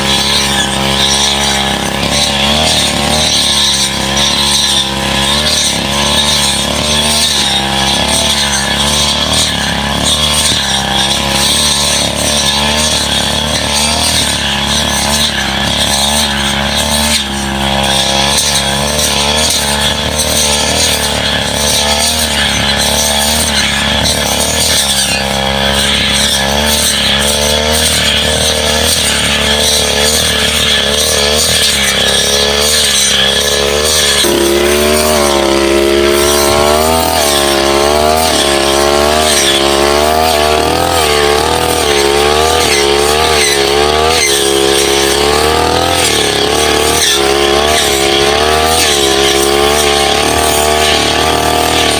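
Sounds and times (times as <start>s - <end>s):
brush cutter engine running: 0.0s - 51.9s.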